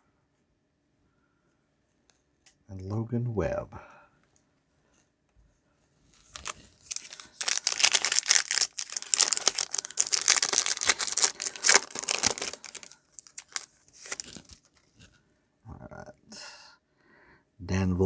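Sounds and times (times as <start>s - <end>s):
foil wrapper crinkling and tearing: 6.2s - 15.1s.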